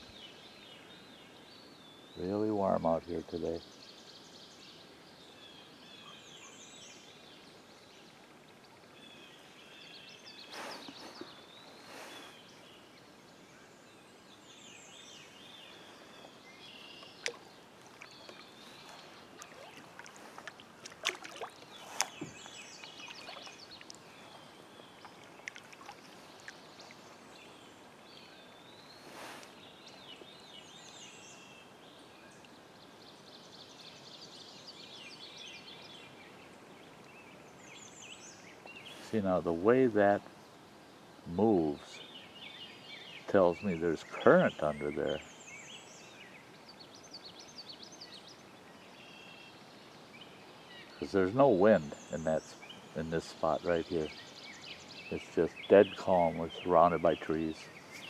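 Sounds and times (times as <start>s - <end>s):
songbirds chirping: 0.0s - 58.0s
paddle swishing water: 10.4s - 12.5s, 15.9s - 27.4s.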